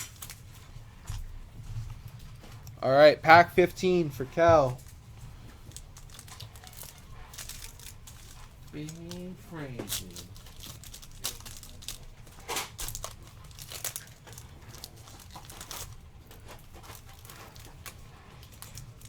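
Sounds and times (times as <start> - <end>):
card pack wrapper crinkling and tearing: 0.0 - 0.5, 5.6 - 19.0
cards rustling: 3.3 - 19.0.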